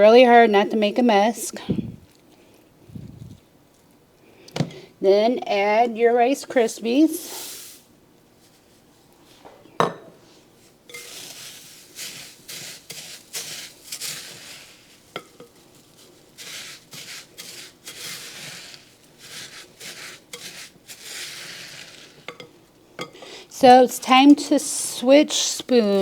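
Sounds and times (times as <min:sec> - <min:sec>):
whisk stirring crispy cereal: 0:07.2 - 0:07.9, 0:10.6 - 0:22.5, 0:23.5 - 0:26.0.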